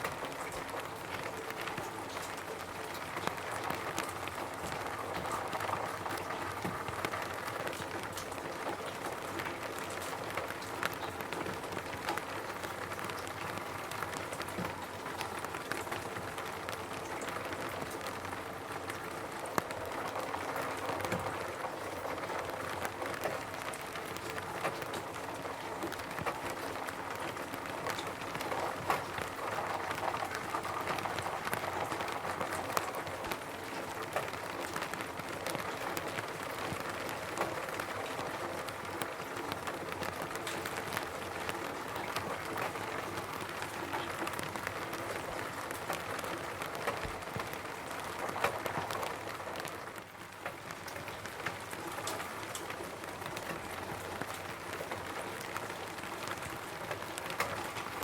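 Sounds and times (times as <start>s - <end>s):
rain falling on a roof: 0.0s - 58.0s.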